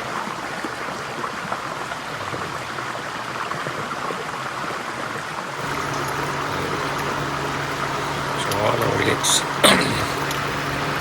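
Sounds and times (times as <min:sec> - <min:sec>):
low steady hum: 0:05.6 - 0:11.0.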